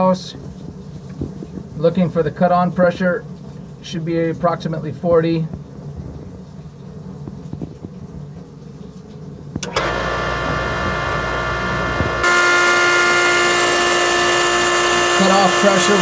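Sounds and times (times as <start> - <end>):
pump motor humming: 5.8 - 16.0.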